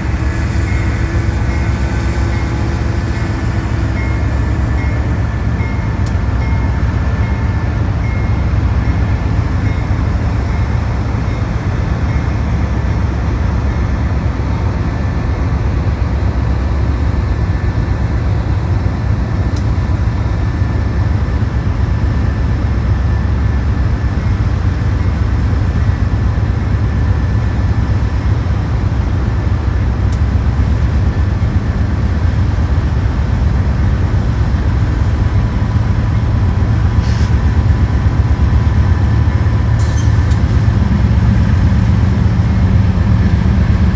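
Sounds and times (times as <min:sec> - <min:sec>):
faint whining tones: 0:00.0 - 0:14.6
vehicle rumble: 0:00.0 - 0:43.9.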